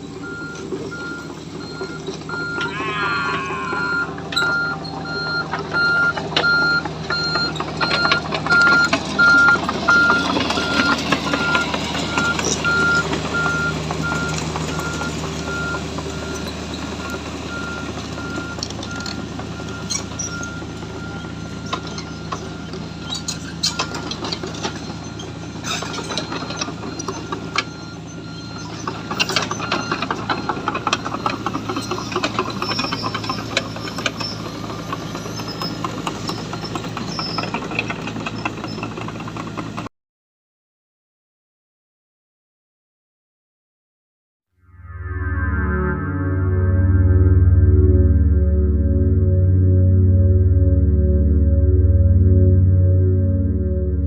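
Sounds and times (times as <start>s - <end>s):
excavator diesel engine running: 0.0s - 39.9s, 45.1s - 54.0s
warning alarm beeping: 0.2s - 16.4s
machine clanks and knocks: 4.1s - 39.9s.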